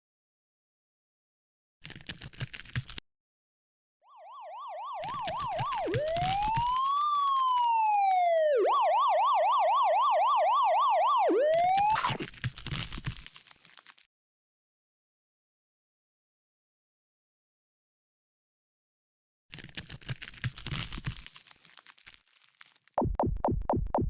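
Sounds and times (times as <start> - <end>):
emergency vehicle siren: 4.1 - 12.2.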